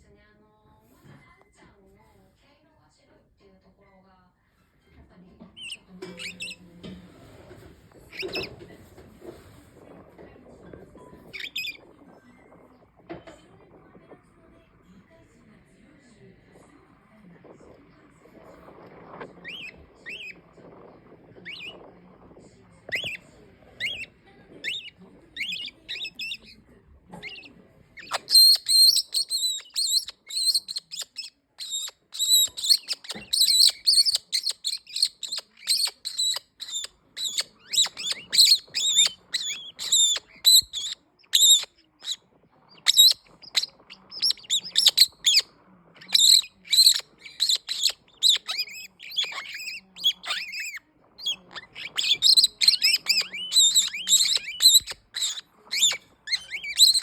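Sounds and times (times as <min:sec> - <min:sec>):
parrot calling: 0:05.6 - 0:06.6, 0:11.2 - 0:11.9, 0:19.4 - 0:20.4, 0:21.4 - 0:21.8, 0:23.8 - 0:26.6, 0:27.2 - 0:57.0.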